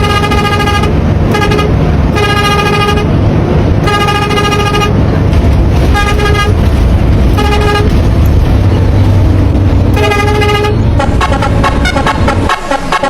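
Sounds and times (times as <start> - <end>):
bus horn blasts: 0.0 - 3.2, 3.8 - 5.2, 5.8 - 6.6, 7.3 - 8.1, 9.9 - 13.0
low engine rumble: 0.0 - 13.0.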